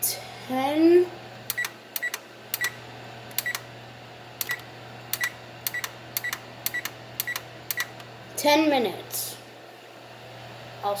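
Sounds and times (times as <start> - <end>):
oven keypad clicks with beeps: 1.5 - 3.7, 4.4 - 8.1.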